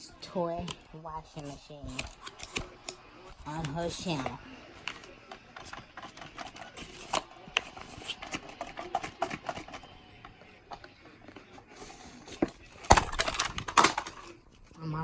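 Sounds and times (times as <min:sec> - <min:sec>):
toy being handled clicks and knocks: 0:01.4 - 0:09.9, 0:12.8 - 0:14.3.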